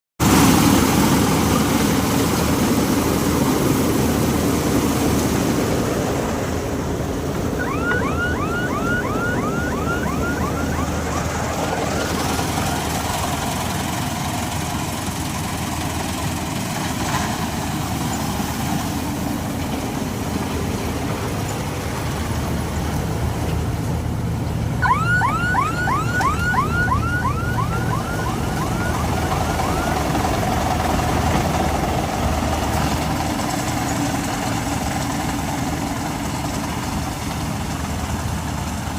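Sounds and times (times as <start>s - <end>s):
combine harvester running: 0.2s - 38.9s
falling high chirps: 7.6s - 11.0s.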